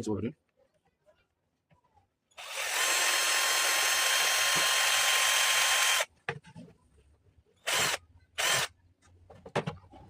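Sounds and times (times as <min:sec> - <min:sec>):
electric drill boring plastic: 0:02.4 - 0:06.1, 0:07.7 - 0:08.7.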